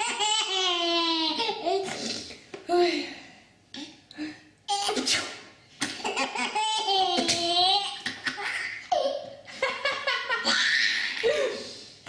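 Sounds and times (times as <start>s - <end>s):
baby laughing: 0.0s - 1.9s, 5.8s - 11.3s
person sneezing: 4.9s - 6.0s.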